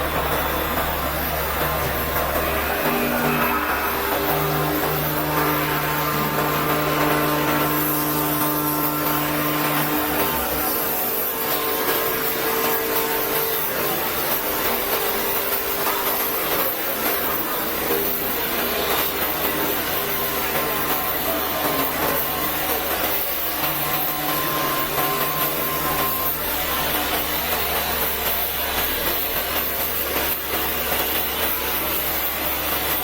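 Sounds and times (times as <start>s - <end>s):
machine hum: 0.0s - 33.0s
cutting torch hissing: 0.6s - 12.4s.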